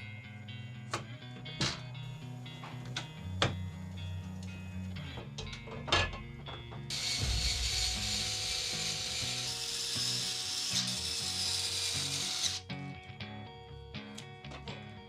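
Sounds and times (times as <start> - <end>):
background music: 0.0 - 15.0
power tool working wood: 6.9 - 12.7.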